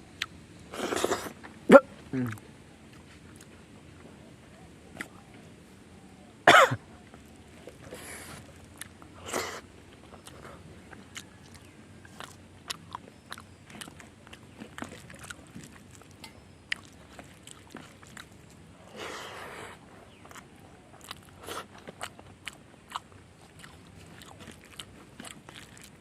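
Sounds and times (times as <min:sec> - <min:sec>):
person coughing: 0:06.5 - 0:06.8
chewing clicks and smacks: 0:09.9 - 0:18.7, 0:20.1 - 0:26.0.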